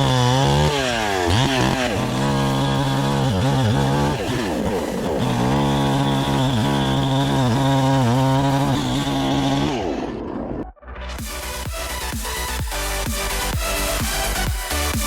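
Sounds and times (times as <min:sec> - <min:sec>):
chainsaw cutting through log: 0:00.0 - 0:10.6, 0:11.2 - 0:15.0
electronic dance music: 0:11.0 - 0:15.0.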